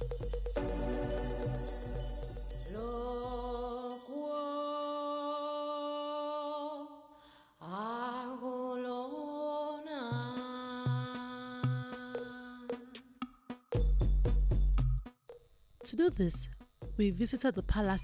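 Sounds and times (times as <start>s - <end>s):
light beat: 0.0s - 3.8s, 10.1s - 15.2s, 15.8s - 18.0s
music with long sliding notes: 0.6s - 3.7s.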